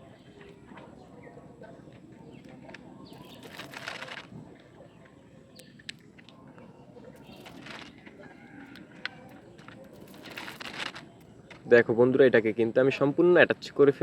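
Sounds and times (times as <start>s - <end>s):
plastic toy parts rustling: 3.1s - 4.4s, 7.2s - 8.1s, 8.7s - 11.3s.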